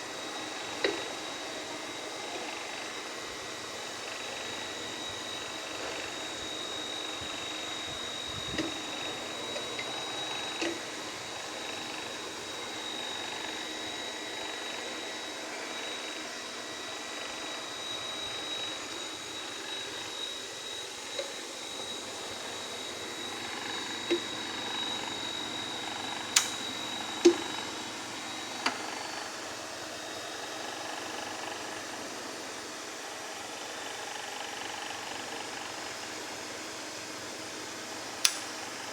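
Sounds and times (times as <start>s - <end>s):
thin high whine: 0.0s - 29.6s
fan and compressor hum: 6.0s - 14.4s, 17.3s - 29.7s.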